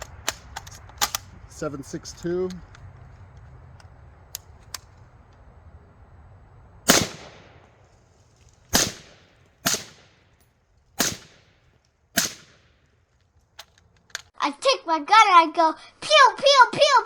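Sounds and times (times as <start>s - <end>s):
faint clicks: 2.0s - 5.4s
rifle shots: 6.8s - 7.8s, 8.7s - 10.4s, 11.0s - 12.9s.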